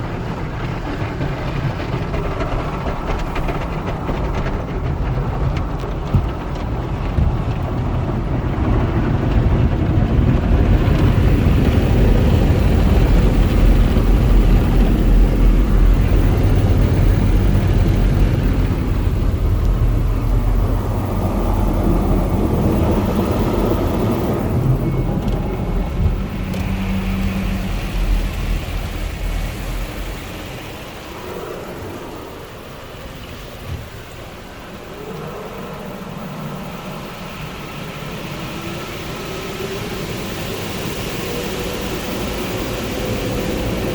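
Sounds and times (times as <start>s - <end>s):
car wash equipment rushing: 0.0s - 43.9s.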